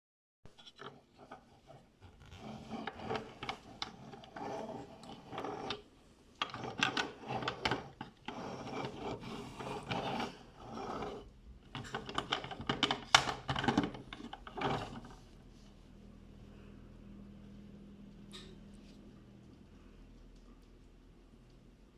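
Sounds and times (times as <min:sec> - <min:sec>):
plastic toy parts clicking and rattling: 0:06.4 - 0:10.3, 0:11.7 - 0:15.1.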